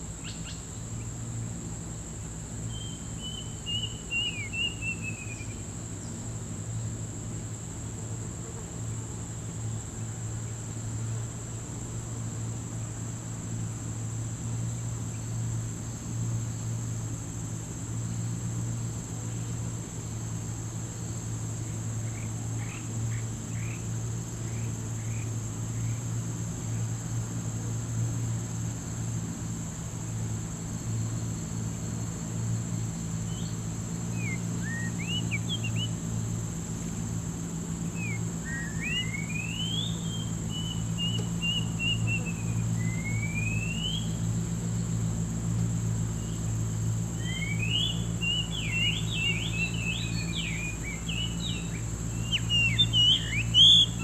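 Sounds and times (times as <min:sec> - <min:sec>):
low steady hum: 0:00.0 - 0:54.0
bird chirps: 0:02.7 - 0:05.6, 0:33.3 - 0:36.0, 0:37.9 - 0:44.2, 0:47.2 - 0:54.0
high-pitched insect drone: 0:08.6 - 0:54.0.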